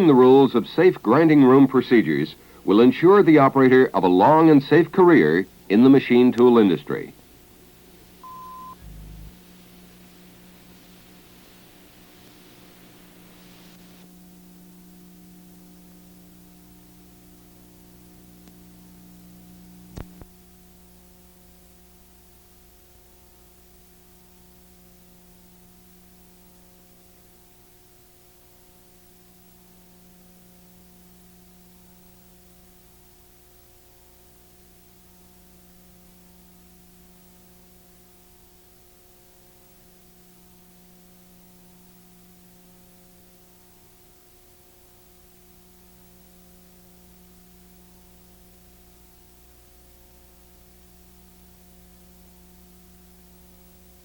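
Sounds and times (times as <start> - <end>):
steady hiss: 0.0 - 14.1
faint hum with hiss: 0.0 - 54.0.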